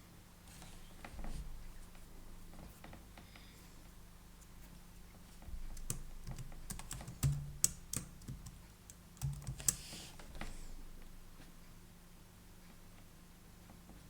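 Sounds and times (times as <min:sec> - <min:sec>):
computer keyboard typing: 0:05.7 - 0:10.0.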